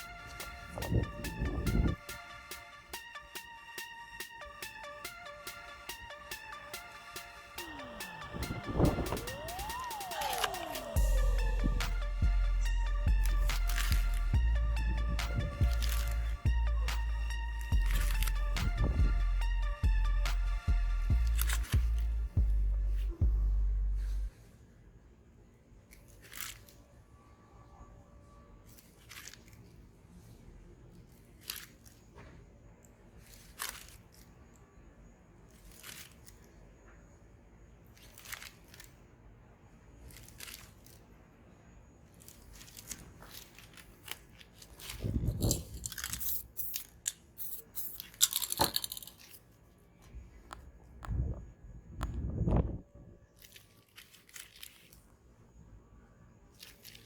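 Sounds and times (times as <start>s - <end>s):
paper rustling and scraping: 13.3s - 14.3s, 15.3s - 16.4s, 33.2s - 34.3s, 42.2s - 49.4s
spray can hissing: 45.9s - 49.0s.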